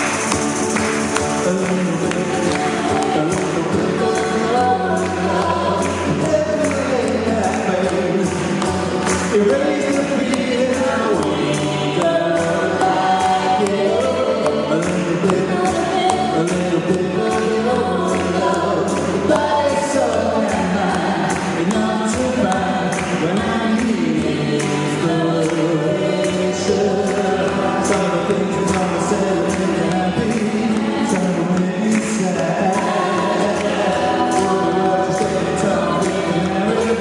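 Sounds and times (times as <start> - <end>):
live band with singing: 0.0 - 37.0
percussion beat: 0.0 - 37.0.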